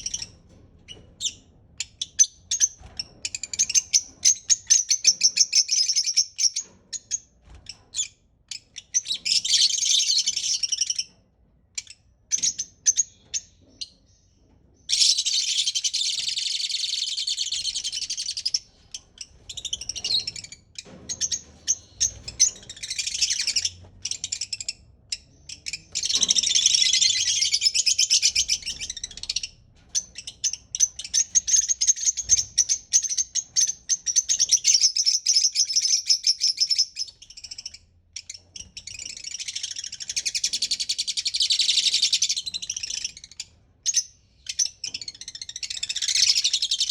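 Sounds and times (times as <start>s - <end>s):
parrot chirping and chattering: 11.8s - 46.9s.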